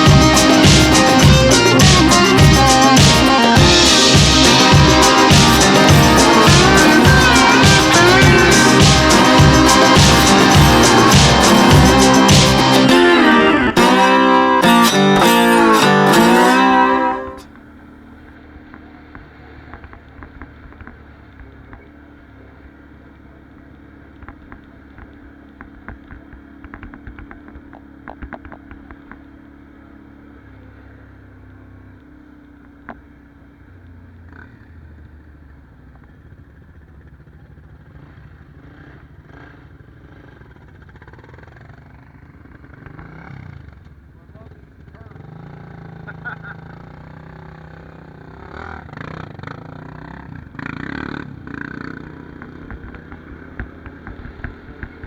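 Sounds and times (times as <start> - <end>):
guitar-led music: 0.0 - 17.5
atv engine running: 0.0 - 55.0.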